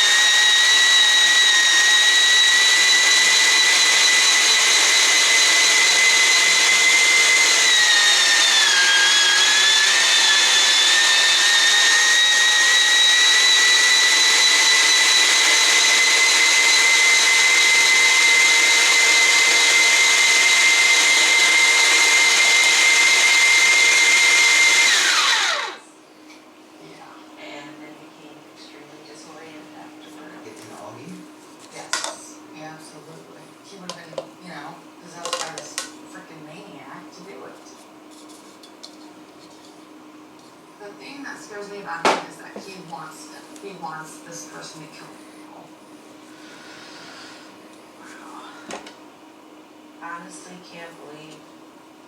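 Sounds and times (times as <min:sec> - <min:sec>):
meat grinder motor whining: 0:00.0 - 0:25.9.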